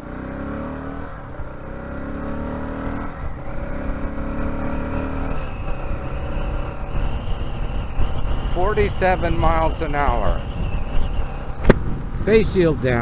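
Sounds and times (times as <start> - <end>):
motorcycle engine accelerating: 0.0 - 13.0
wind rush on microphone: 2.9 - 13.0.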